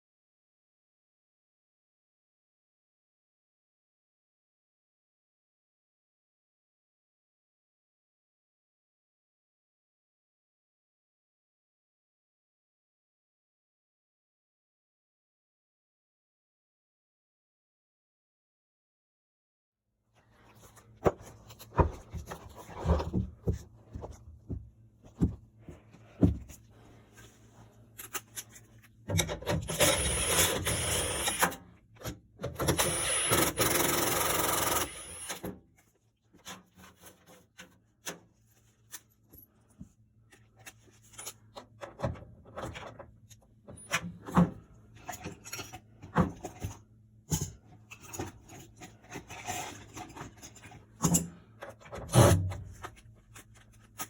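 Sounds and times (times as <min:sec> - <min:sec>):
tools clicking and scraping metal: 0:27.9 - 0:35.5, 0:40.3 - 0:41.9, 0:45.0 - 0:54.0.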